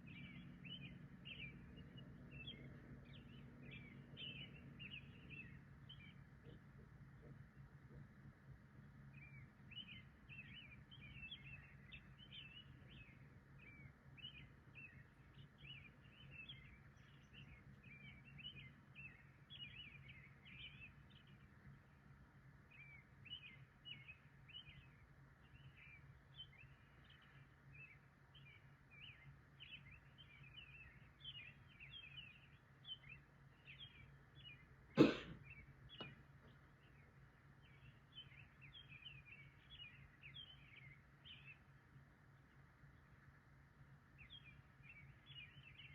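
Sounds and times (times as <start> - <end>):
steady low hum: 0.0 - 45.9
loud cough: 35.0 - 35.4.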